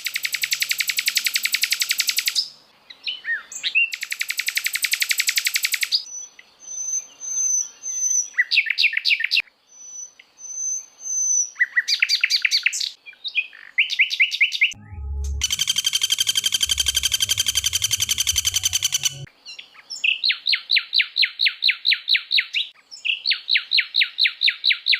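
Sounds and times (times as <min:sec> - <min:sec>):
low rumble: 0:14.8 - 0:19.3.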